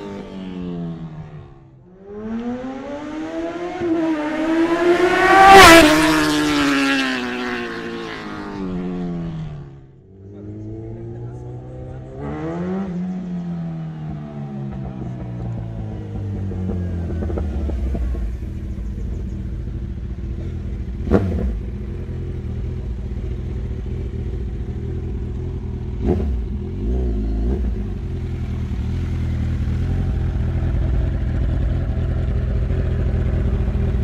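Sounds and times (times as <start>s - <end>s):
motorcycle engine idling: 13.2s - 34.0s.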